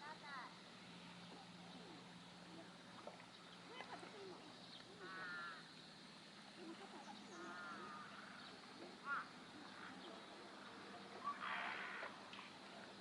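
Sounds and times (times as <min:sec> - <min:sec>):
harsh crow-like bird calls: 0:05.0 - 0:05.6, 0:07.3 - 0:08.4, 0:11.2 - 0:12.2.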